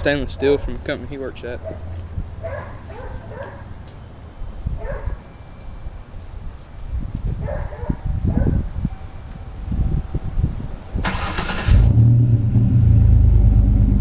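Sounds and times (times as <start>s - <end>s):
dog barking: 1.6s - 3.7s, 4.8s - 5.2s, 7.4s - 8.6s
low rumble: 11.8s - 14.0s.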